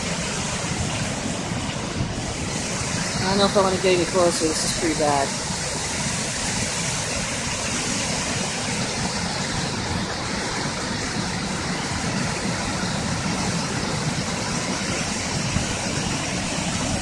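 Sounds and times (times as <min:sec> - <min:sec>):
floodwater rushing: 0:00.0 - 0:17.0.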